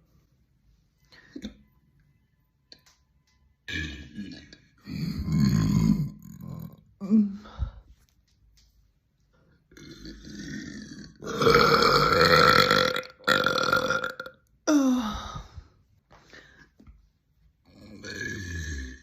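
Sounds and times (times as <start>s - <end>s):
women burping: 9.7s - 15.0s.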